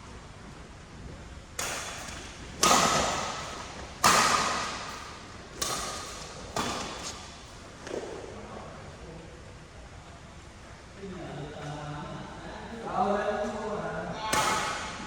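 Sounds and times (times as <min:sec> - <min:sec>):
racket hitting shuttlecock: 0:01.6 - 0:07.5, 0:14.2 - 0:15.0.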